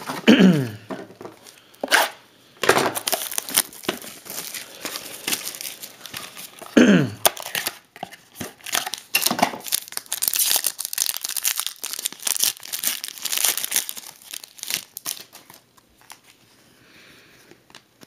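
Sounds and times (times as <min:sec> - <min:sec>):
plastic packaging crinkling and tearing: 0:02.9 - 0:16.4.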